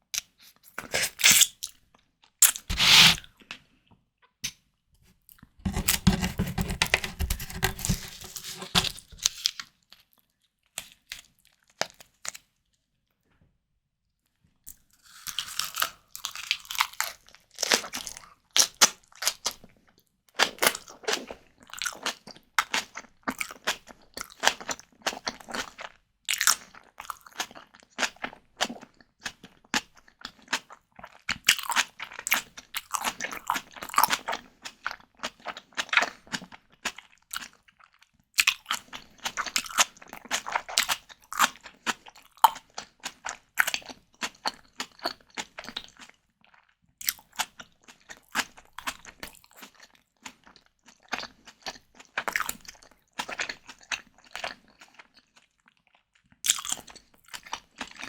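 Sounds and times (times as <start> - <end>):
crunchy chewing of prawns: 0.2 - 1.8, 15.0 - 58.0
wet mouth clicks: 2.4 - 3.3.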